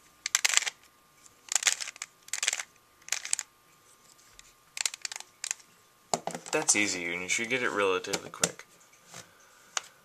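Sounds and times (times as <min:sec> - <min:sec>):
puzzle cube plastic clicking: 0:00.2 - 0:00.8, 0:01.5 - 0:03.5, 0:04.8 - 0:05.6.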